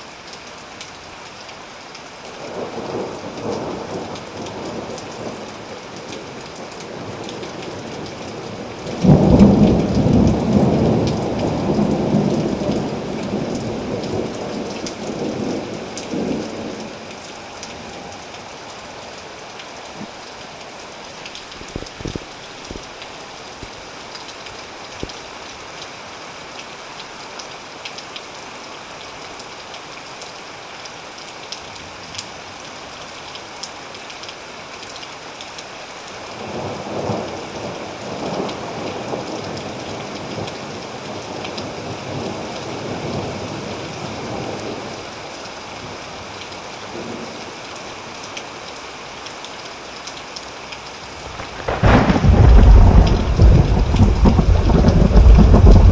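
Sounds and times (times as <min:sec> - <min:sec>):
steady rain falling: 0:00.0 - 0:55.9
rolling thunder rumble: 0:51.2 - 0:55.9.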